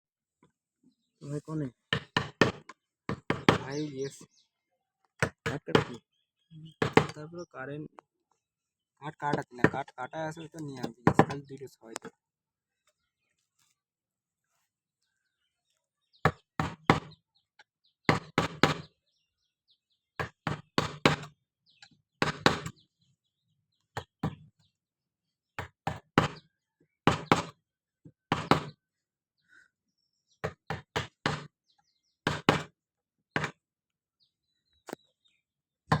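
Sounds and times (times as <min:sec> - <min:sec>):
hammering on wood: 0:01.9 - 0:03.8, 0:05.2 - 0:06.0, 0:06.8 - 0:07.2, 0:10.8 - 0:11.4, 0:16.3 - 0:17.2, 0:18.1 - 0:18.9, 0:20.2 - 0:21.3, 0:22.2 - 0:22.7, 0:25.6 - 0:26.4, 0:27.1 - 0:27.6, 0:28.3 - 0:28.8, 0:30.4 - 0:31.5, 0:32.2 - 0:32.7, 0:33.4 - 0:33.6.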